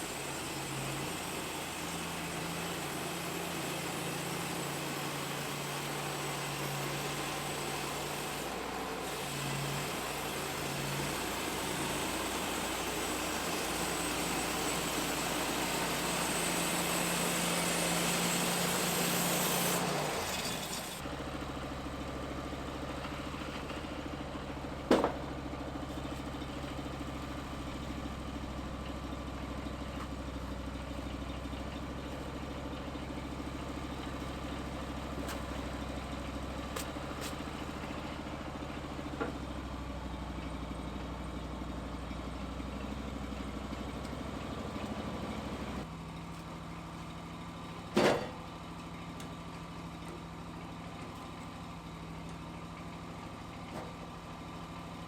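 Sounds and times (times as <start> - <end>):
engine idling: 21.0 - 55.0.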